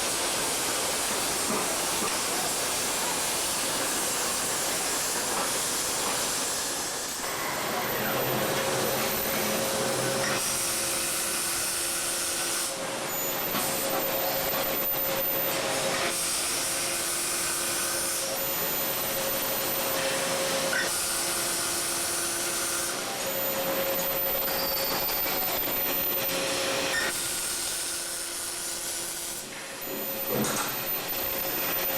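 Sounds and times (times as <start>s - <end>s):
welding hissing crackle: 8.8s - 30.0s.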